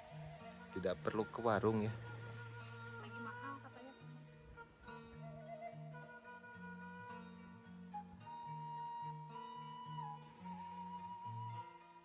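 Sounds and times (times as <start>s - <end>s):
background music: 0.0s - 12.0s.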